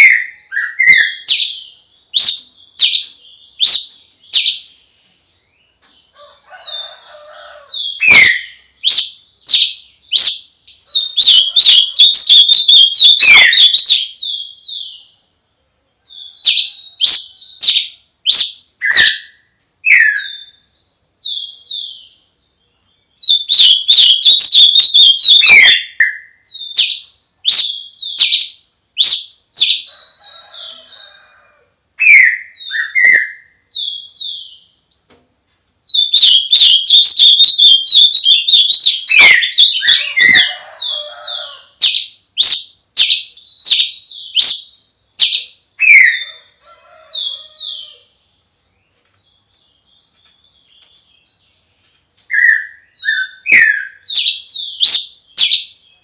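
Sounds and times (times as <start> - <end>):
songbird chattering notes: 7.8 - 14.9, 23.3 - 25.8, 35.9 - 41.1
bird whistled notes: 11.0 - 14.4, 23.3 - 28.4, 36.0 - 40.6.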